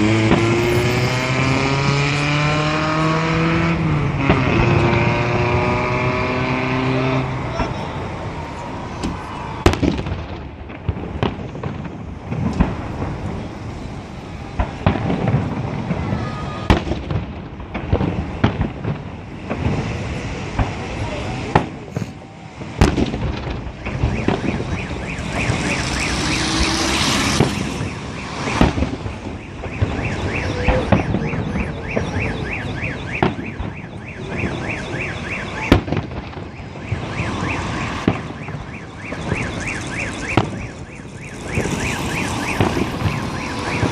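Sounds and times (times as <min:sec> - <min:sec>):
fireworks banging and crackling: 0:00.0 - 0:43.9
car alarm pulsing: 0:23.8 - 0:43.9.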